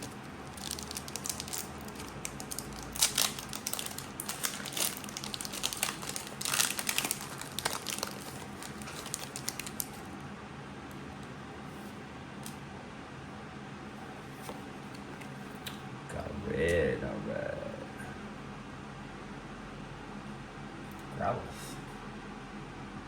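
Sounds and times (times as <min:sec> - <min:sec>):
foil wrapper crinkling: 0:00.0 - 0:10.2.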